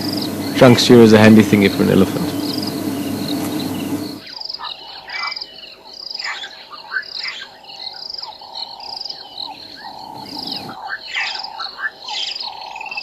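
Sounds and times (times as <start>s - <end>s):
broad hiss: 0.0s - 4.2s, 10.0s - 10.8s
steady drone: 0.0s - 4.2s, 9.6s - 10.8s
bird chirps: 0.0s - 13.0s.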